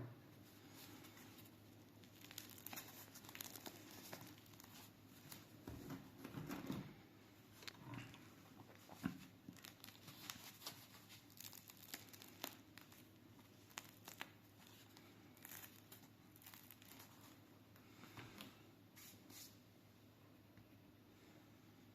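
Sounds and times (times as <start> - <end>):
bread crust crackling: 0.6 - 5.7, 8.7 - 18.1.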